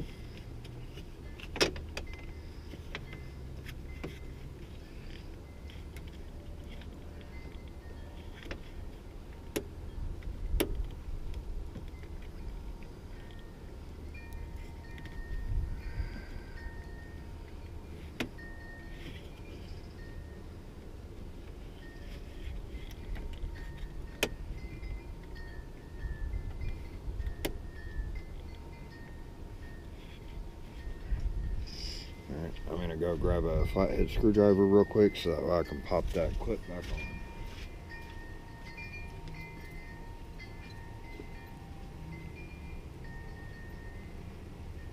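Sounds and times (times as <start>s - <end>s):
steady low rumble: 0.0s - 44.9s.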